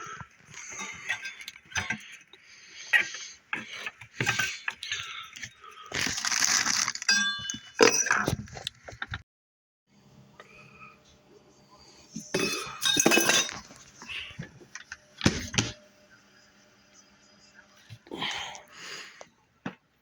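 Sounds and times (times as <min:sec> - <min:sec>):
objects clicking and knocking: 0:00.1 - 0:09.2.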